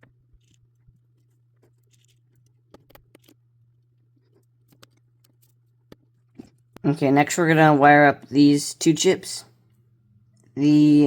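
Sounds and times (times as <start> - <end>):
wires clicking into breadboard: 1.7 - 3.4, 4.2 - 6.5.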